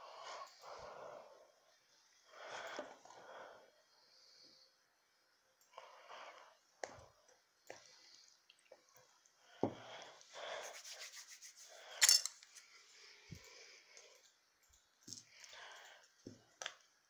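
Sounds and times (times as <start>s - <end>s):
hands rubbing and scraping slime: 10.5s - 11.8s.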